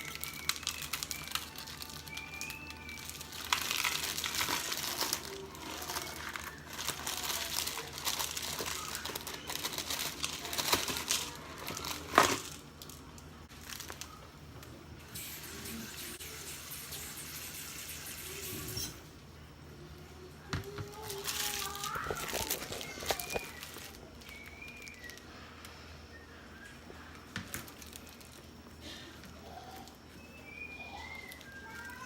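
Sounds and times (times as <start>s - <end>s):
plastic packet crinkling: 0.0s - 14.3s, 20.6s - 25.3s, 27.5s - 28.5s, 29.2s - 32.0s.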